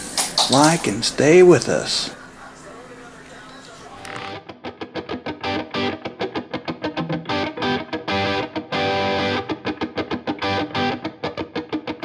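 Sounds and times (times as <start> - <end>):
guitar chords strummed: 4.1 - 11.7.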